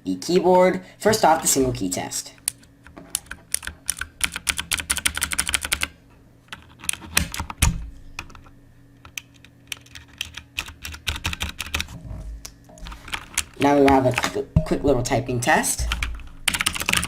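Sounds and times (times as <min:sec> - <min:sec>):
heavier keyboard thump: 0:15.8 - 0:17.0.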